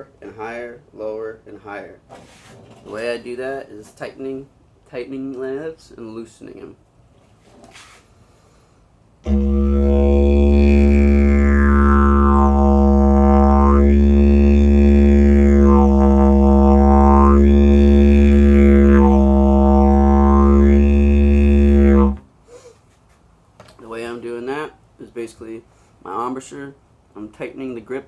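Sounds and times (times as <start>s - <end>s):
didgeridoo drone: 9.3s - 22.2s.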